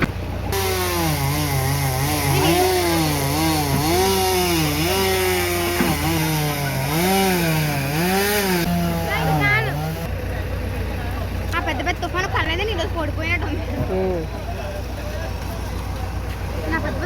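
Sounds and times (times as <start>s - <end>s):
chainsaw revving: 0.5s - 10.1s.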